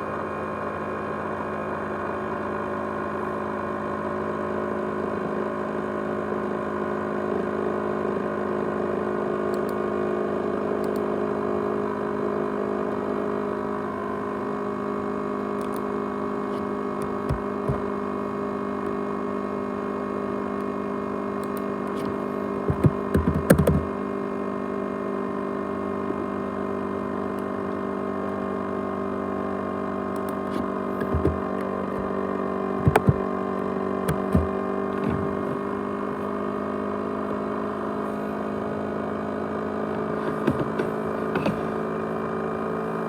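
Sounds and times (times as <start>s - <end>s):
laptop whirring hum: 0.0s - 43.0s
short knocks: 22.0s - 23.9s, 31.0s - 31.4s, 32.8s - 33.2s, 34.1s - 35.6s, 40.3s - 41.7s.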